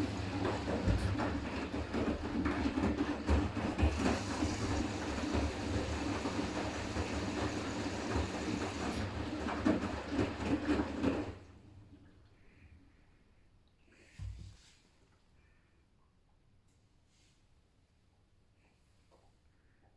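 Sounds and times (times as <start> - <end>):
washing machine motor hum: 0.0 - 12.3
laundry and water churning: 0.0 - 12.5.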